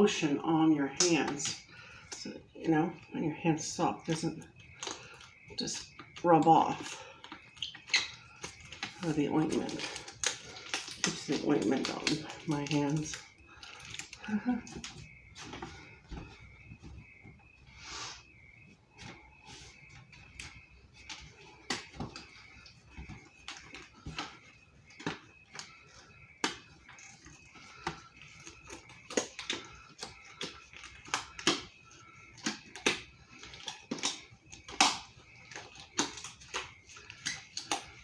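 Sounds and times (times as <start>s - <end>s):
latex gloves snapping and rubbing: 7.2s - 16.2s, 20.1s - 38.0s.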